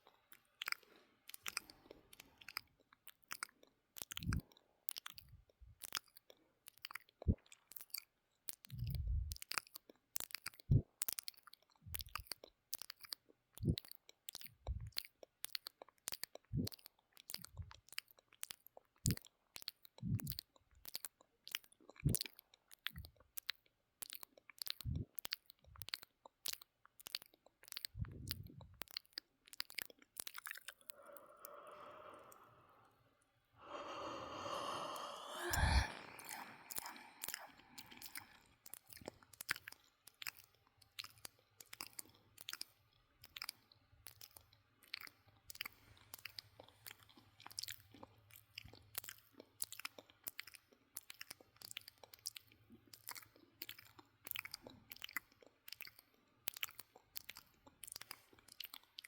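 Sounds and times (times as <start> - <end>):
wet tongue and lip clicks: 0.0 - 59.0
soft low mouth pops: 0.3 - 6.1, 8.5 - 9.6, 10.4 - 11.2, 11.9 - 12.9, 13.5 - 15.1, 18.4 - 21.0, 21.9 - 33.0, 33.6 - 40.4
breathy voiced sound: 27.9 - 28.7, 30.3 - 39.8.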